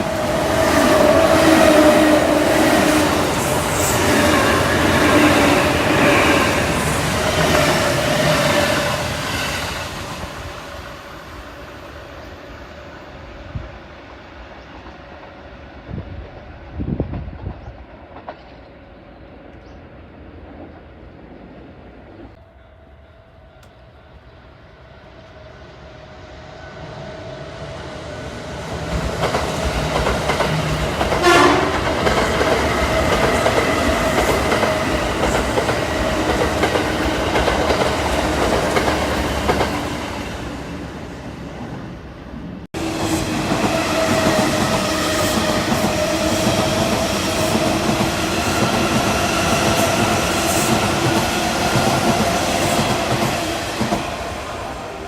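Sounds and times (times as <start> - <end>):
electric train passing: 0.0 - 55.0
train horn blast: 31.1 - 31.9.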